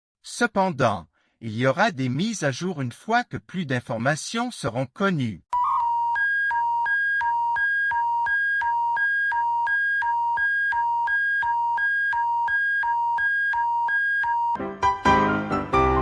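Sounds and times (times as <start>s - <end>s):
two-tone electronic alert beeps: 5.6s - 14.6s
piano music: 14.6s - 16.0s.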